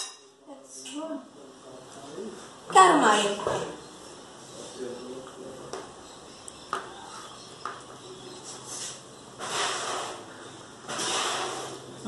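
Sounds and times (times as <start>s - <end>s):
breathy hiss of air: 8.8s - 11.9s.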